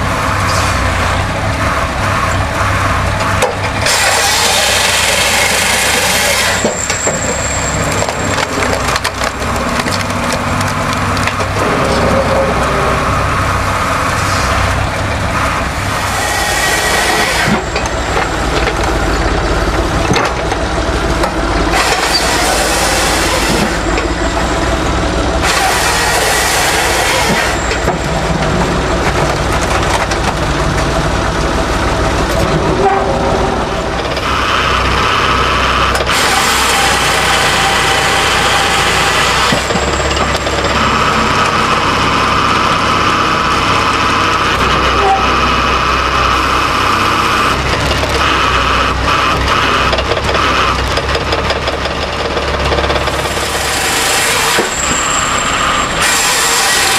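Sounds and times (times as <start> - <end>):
wood-processing machine running: 0.0 - 56.9
wood cracking and splintering: 3.2 - 12.0.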